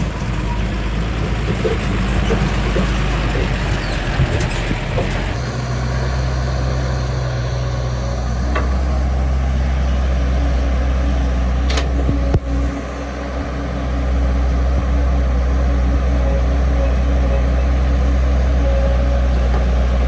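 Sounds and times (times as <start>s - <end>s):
heavy diesel engine running: 0.0s - 20.0s.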